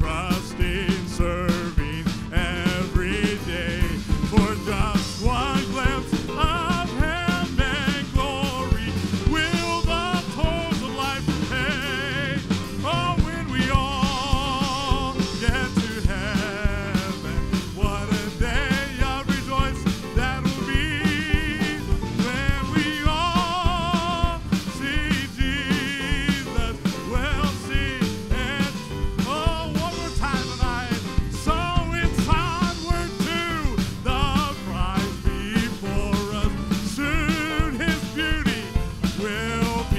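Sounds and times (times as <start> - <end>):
gospel band playing: 0.0 - 39.9
steady drum beat: 0.0 - 39.9
voices singing with vibrato: 0.0 - 39.9.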